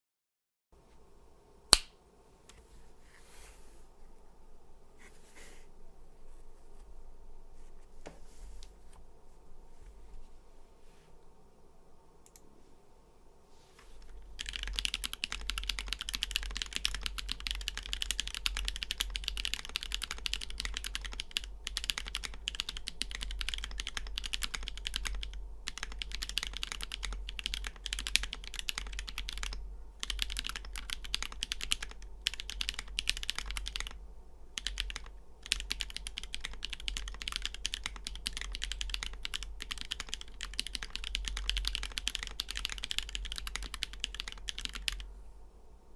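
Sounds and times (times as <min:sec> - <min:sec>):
fast mechanical keyboard typing: 0:14.1 - 0:34.0, 0:34.6 - 0:45.0.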